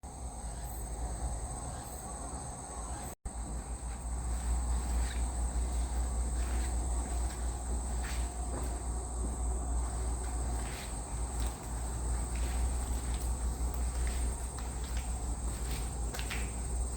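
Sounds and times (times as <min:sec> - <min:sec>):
insects buzzing: 0:00.0 - 0:16.9.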